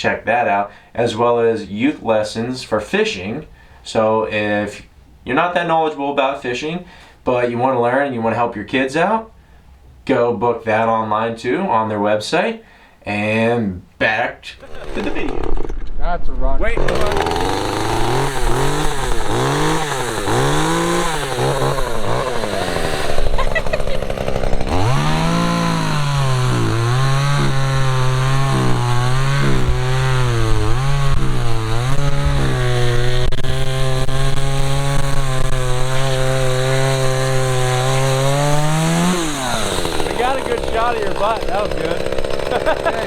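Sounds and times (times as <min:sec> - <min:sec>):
chainsaw cutting wood: 0:14.6 - 0:16.0, 0:16.7 - 0:43.0.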